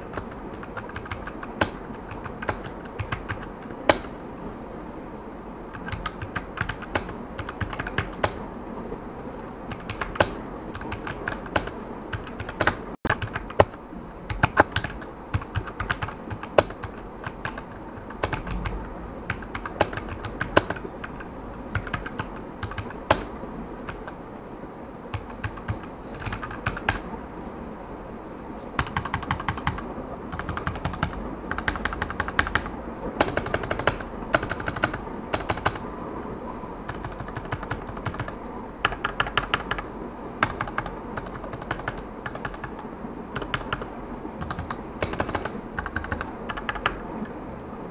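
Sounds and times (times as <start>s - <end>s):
typing on mechanical keyboard: 0.0s - 4.1s, 5.7s - 8.4s, 9.7s - 24.2s, 25.1s - 27.0s, 28.8s - 35.8s, 36.9s - 39.8s, 40.4s - 42.8s, 43.4s - 47.0s.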